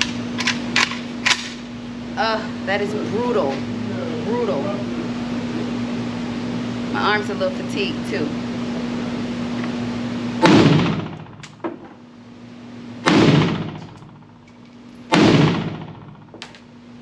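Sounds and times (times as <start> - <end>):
pistol gunshots echoing: 13.0 - 14.0, 15.1 - 16.3.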